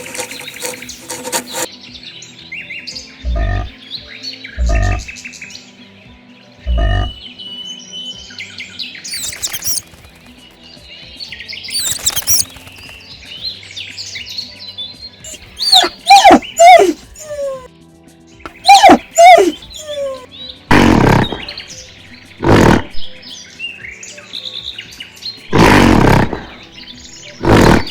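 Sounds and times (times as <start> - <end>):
birds chirping and calling: 2.9 - 5.6, 6.6 - 7.4, 8.9 - 10.8, 11.6 - 14.2, 15.3 - 17.7, 18.5 - 23.6, 24.5 - 27.9
animal yelps: 3.2 - 3.8, 4.6 - 5.1, 6.7 - 7.2, 9.1 - 10.0, 11.7 - 12.7, 15.3 - 17.7, 18.5 - 23.2, 25.5 - 26.8, 27.4 - 27.9.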